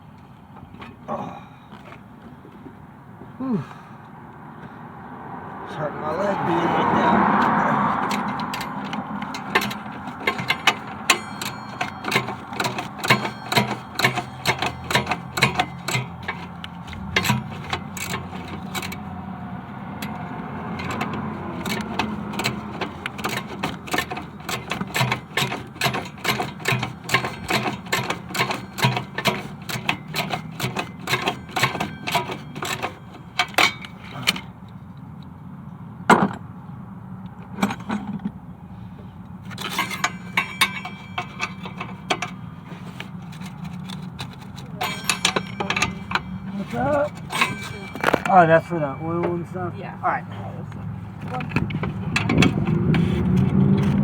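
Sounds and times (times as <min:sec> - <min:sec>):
hand ratchet clicking: 0:07.4 - 0:19.0, 0:20.0 - 0:34.5, 0:39.5 - 0:48.4.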